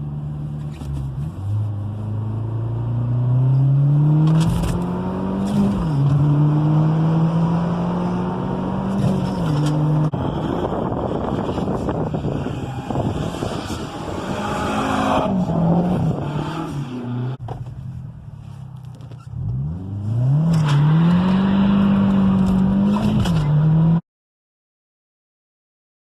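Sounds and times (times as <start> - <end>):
loud car engine revving: 1.2 - 17.4, 19.3 - 24.0.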